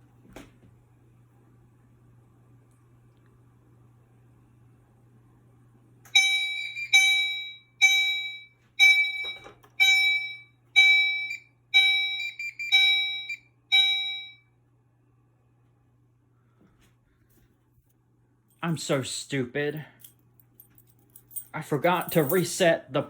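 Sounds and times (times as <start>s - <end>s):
fire alarm chime: 6.1s - 14.5s.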